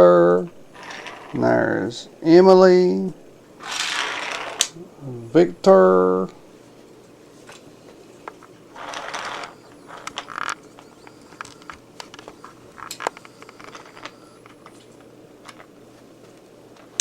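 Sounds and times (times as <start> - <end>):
toy train pieces clicking: 3.6 - 4.7, 8.8 - 10.5.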